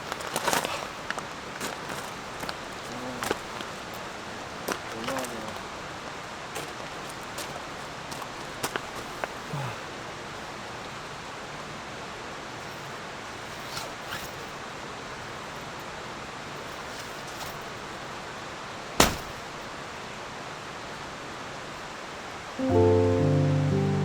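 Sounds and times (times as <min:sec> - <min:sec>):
mountain stream rushing: 0:00.0 - 0:13.4
sharp knock: 0:19.0 - 0:19.4.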